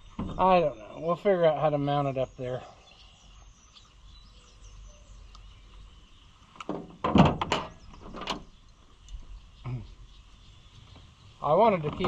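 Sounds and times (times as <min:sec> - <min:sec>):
thud: 0:06.7 - 0:08.5.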